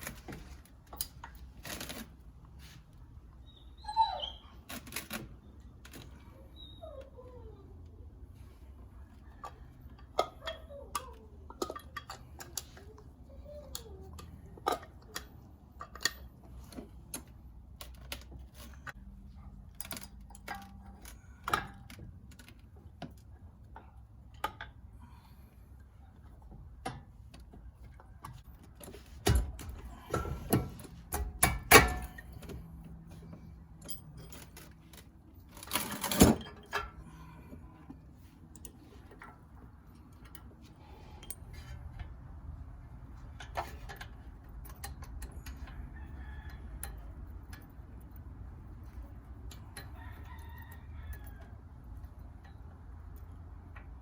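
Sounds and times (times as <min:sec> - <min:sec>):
metal tools clicking and clinking: 0:09.1 - 0:24.9, 0:28.2 - 0:42.2, 0:43.2 - 0:54.0.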